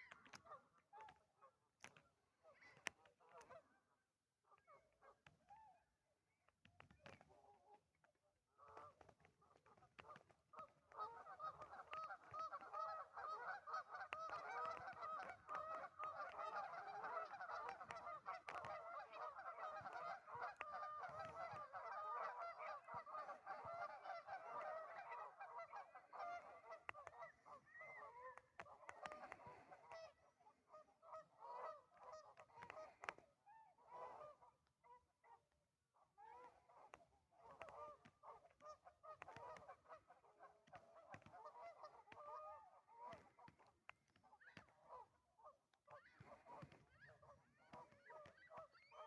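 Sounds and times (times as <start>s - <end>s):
flock of waterfowl calling: 10.0s - 33.2s, 33.9s - 34.5s, 36.2s - 43.7s, 44.5s - 49.0s.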